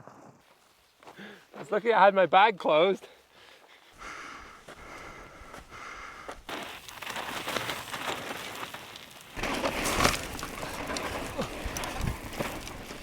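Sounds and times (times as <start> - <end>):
bike tyres rolling over gravel: 4.7 - 13.0.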